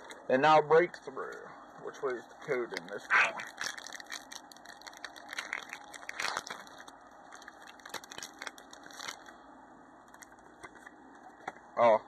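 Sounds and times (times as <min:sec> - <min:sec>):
foil wrapper crinkling: 0:02.2 - 0:09.4, 0:10.0 - 0:11.5.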